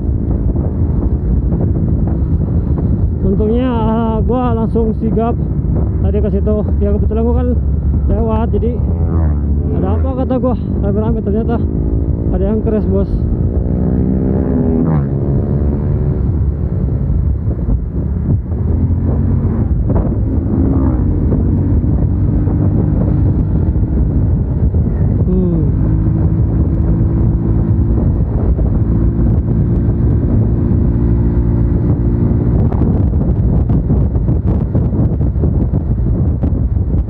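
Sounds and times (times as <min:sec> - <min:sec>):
motorcycle engine running: 0:00.0 - 0:37.0
wind buffeting microphone: 0:00.0 - 0:37.0.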